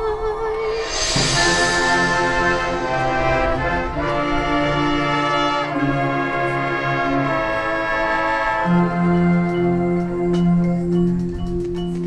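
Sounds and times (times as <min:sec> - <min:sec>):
bright cymbal crash: 0:00.6 - 0:05.5
brass section playing chords: 0:00.8 - 0:10.3.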